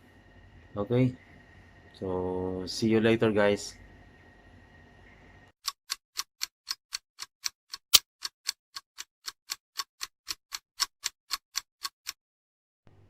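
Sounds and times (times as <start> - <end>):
clock ticking: 5.6 - 12.2.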